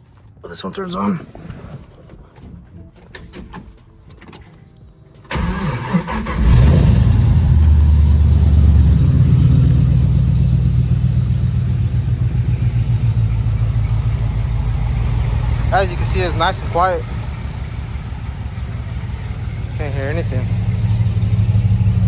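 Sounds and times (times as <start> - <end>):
car engine cranking and starting: 5.2 - 22.0
car engine idling: 5.3 - 22.0.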